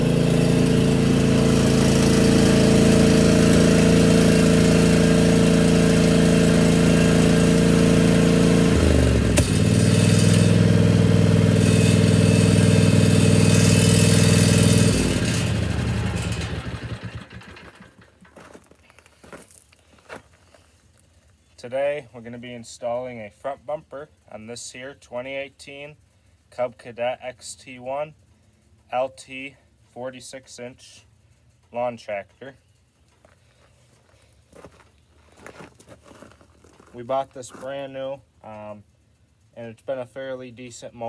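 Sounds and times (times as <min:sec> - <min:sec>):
lawn tractor engine running: 0:00.0 - 0:19.6.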